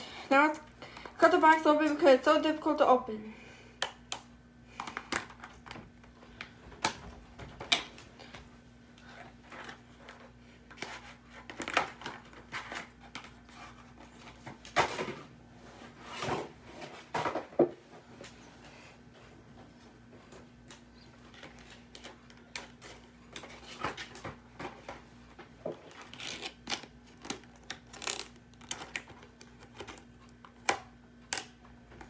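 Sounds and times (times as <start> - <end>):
packaging clicks and rustles: 25.8 - 32.0.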